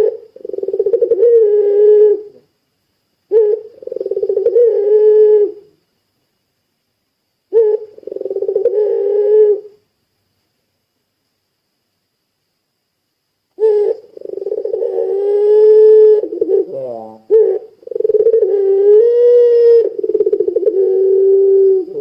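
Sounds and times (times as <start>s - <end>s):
turtle dove cooing: 0.0s - 2.4s, 3.3s - 5.8s, 7.5s - 9.8s, 13.6s - 22.0s.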